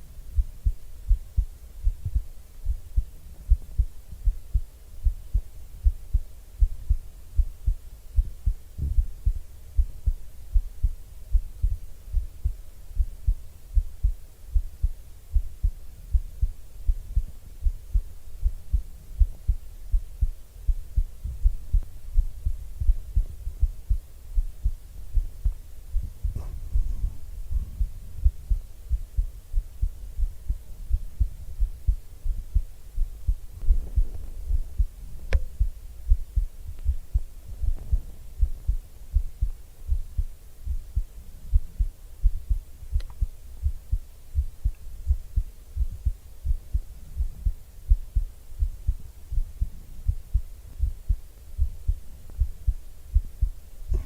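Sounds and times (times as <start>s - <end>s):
heartbeat thumps: 0.0s - 54.0s
faint brushing noises: 26.0s - 28.5s.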